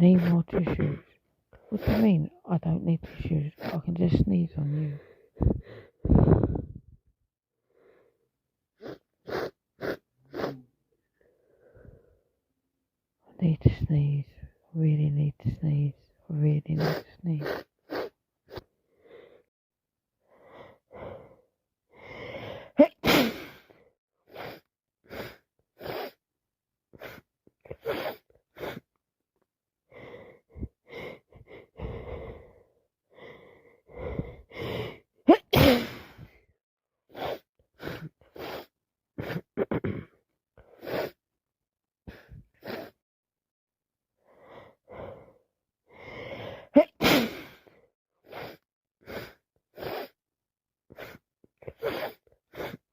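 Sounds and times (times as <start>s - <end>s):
gasping in-breaths: 4.7s - 6.8s, 16.8s - 19.5s, 20.2s - 22.8s, 29.9s - 35.1s, 44.2s - 46.8s
woman sneezing: 22.8s - 23.6s, 35.3s - 36.2s, 46.8s - 47.6s.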